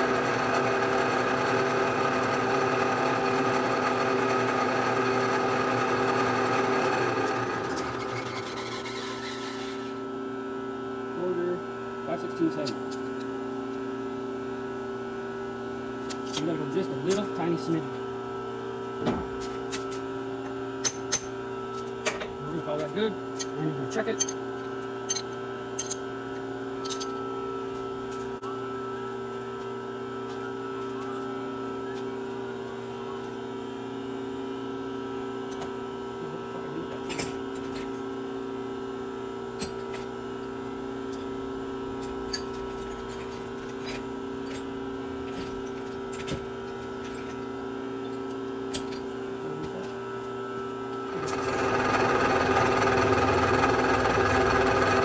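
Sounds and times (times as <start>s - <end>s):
milling machine motor hum: 0.0s - 9.0s, 50.9s - 55.0s
rough machining noise: 0.0s - 10.0s, 51.0s - 55.0s.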